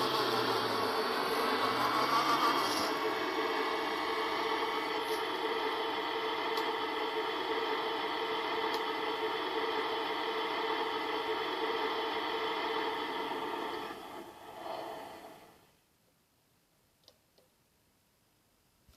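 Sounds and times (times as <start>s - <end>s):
toy model mechanical drone: 1.2s - 3.0s.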